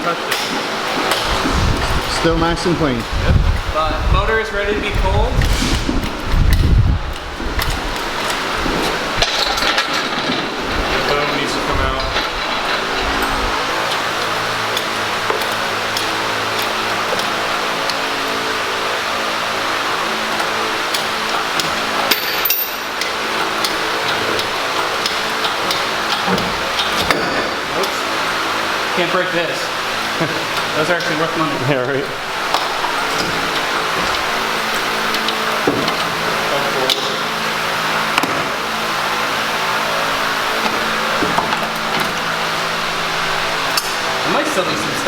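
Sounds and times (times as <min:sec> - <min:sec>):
workshop hum: 0:00.0 - 0:45.0
hand tools tapping on metal: 0:20.3 - 0:28.2.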